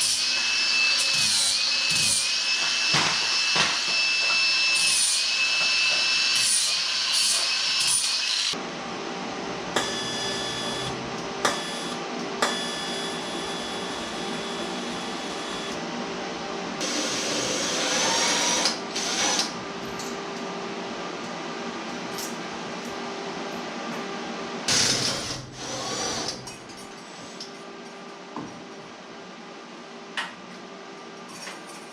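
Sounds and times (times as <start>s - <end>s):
power tools on steel tubing: 0.0s - 8.6s.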